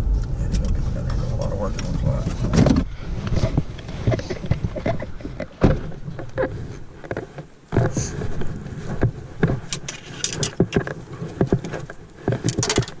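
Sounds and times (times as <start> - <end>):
vehicle running noise: 0.0 - 3.9
knocks and rattles: 0.0 - 13.0.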